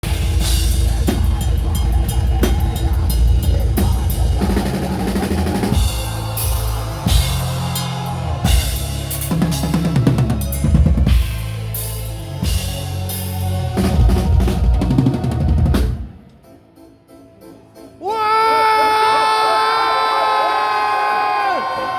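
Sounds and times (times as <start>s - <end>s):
pounding drums: 0.0s - 13.0s
heavy metal band playing: 0.0s - 16.2s
low bass line: 0.0s - 16.2s.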